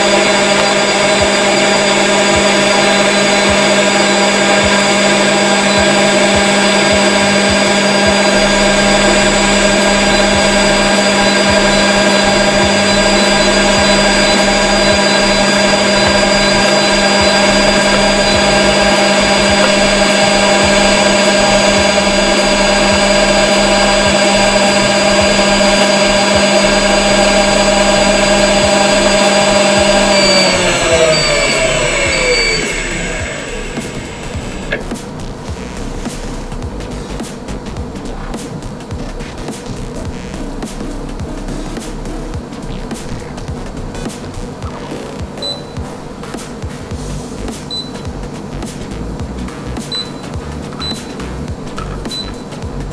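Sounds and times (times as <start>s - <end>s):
mixer motor whining: 0.0s - 52.9s.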